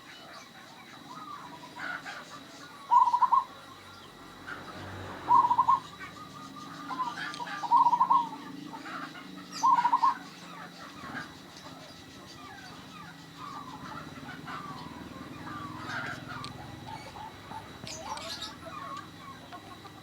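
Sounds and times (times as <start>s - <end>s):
dove cooing: 0.0s - 20.0s.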